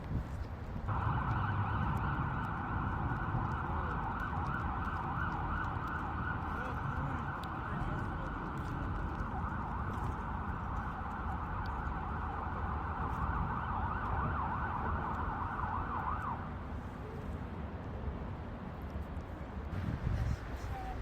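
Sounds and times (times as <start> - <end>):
low traffic rumble: 0.0 - 21.0
emergency vehicle siren: 0.9 - 16.8.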